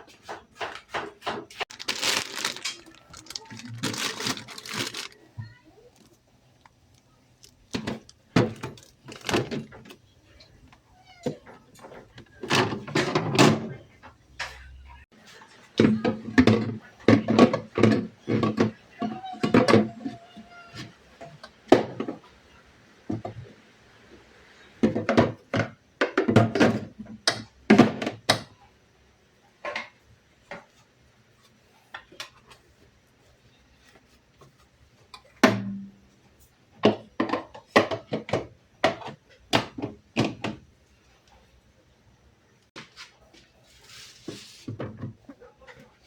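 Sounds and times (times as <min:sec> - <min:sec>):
hard objects knocking and clunking: 0:00.0 - 0:06.2, 0:07.0 - 0:10.0.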